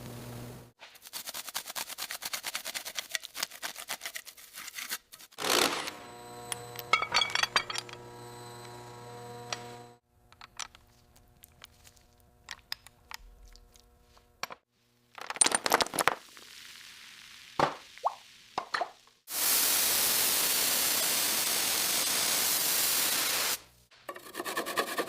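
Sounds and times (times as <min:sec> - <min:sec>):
steady machine hum: 0:05.9 - 0:10.0
steady hiss: 0:19.2 - 0:23.8.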